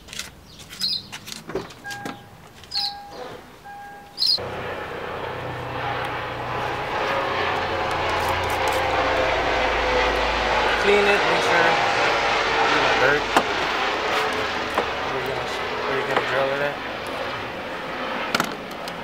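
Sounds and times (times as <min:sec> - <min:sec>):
car engine starting and running: 0:00.9 - 0:15.3
electronic chime beeps: 0:01.8 - 0:04.4.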